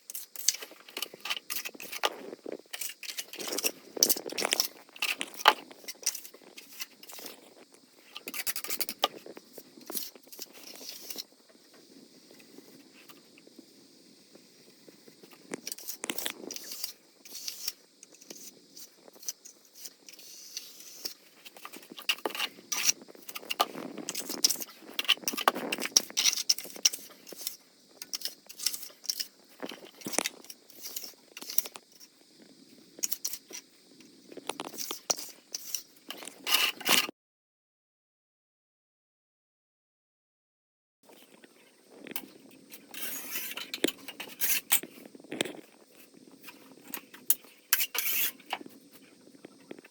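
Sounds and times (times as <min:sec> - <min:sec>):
scraping and clinking of hand work: 0:00.0 - 0:13.3, 0:15.2 - 0:32.2, 0:34.3 - 0:37.1, 0:41.1 - 0:49.9.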